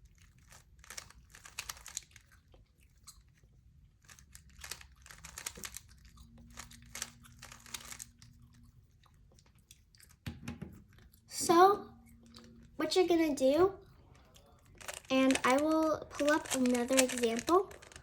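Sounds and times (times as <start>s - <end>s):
puzzle cube clicking and rattling: 0.4s - 2.2s, 4.1s - 8.1s, 14.7s - 18.0s.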